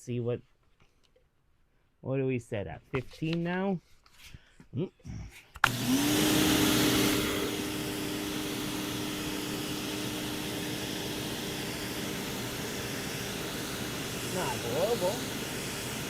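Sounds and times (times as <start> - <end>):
pressure washer motor hum: 5.6 - 16.0
water jet hiss: 11.4 - 16.0.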